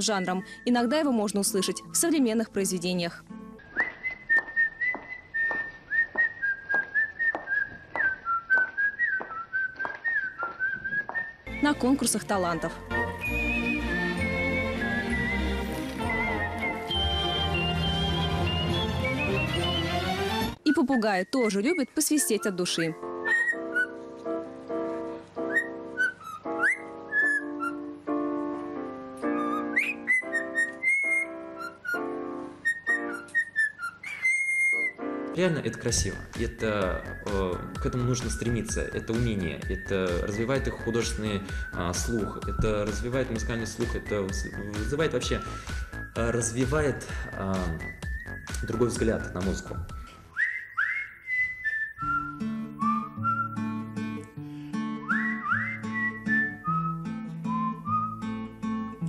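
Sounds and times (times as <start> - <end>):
person whistling a melody: 3.6 - 12.2, 13.0 - 20.1, 36.8 - 53.8, 54.9 - 59.0
steady clicking beat: 48.0 - 48.8.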